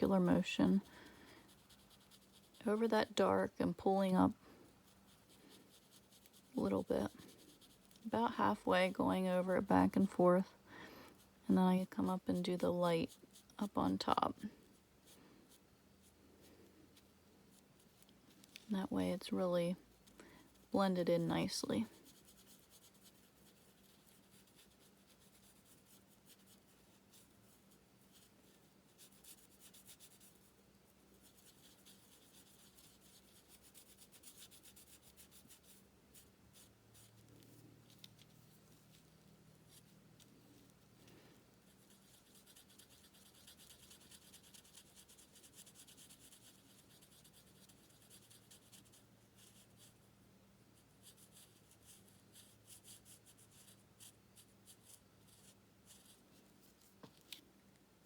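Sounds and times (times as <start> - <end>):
low steady hum: 0.0 - 58.0
marker tips scratching on cardstock: 1.5 - 2.9, 4.8 - 8.1, 31.1 - 40.8, 41.6 - 50.0, 50.8 - 56.2.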